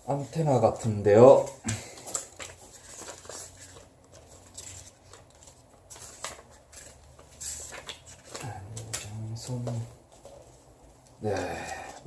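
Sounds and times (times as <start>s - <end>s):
packaging clicks and rustles: 0.3s - 9.9s.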